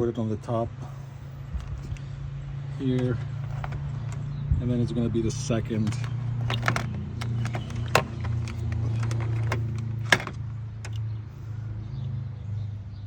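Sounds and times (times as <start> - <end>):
test leads clicking and tapping: 5.7 - 11.0.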